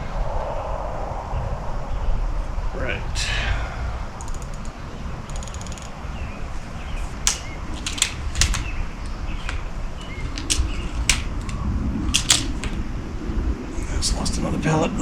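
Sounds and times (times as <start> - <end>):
scope turret clicking: 4.2 - 6.0, 7.1 - 12.8
rifle handling clicks and snaps: 7.2 - 12.8.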